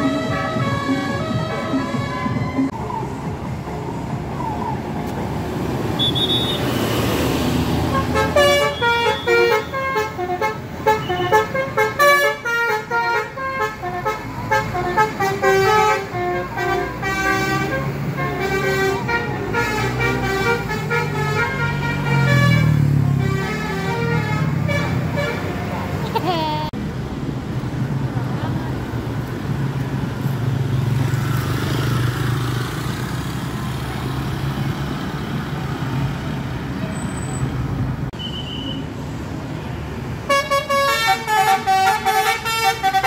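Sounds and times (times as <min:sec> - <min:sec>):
musical bus horn melody: 0:00.0 - 0:02.8, 0:07.8 - 0:25.7, 0:40.2 - 0:43.0
bus and traffic noise: 0:00.0 - 0:43.0.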